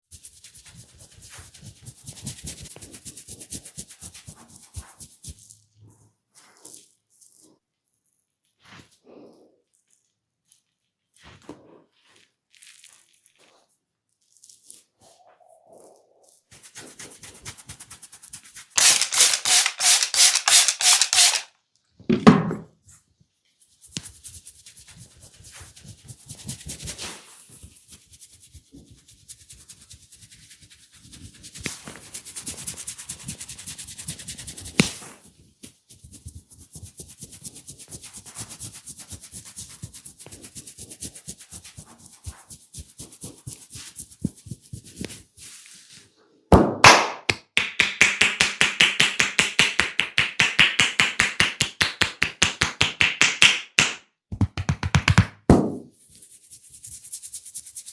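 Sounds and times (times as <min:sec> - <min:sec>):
fingers scratching through hair: 0:00.0 - 0:21.5, 0:23.5 - 0:46.0, 0:56.0 - 0:57.9.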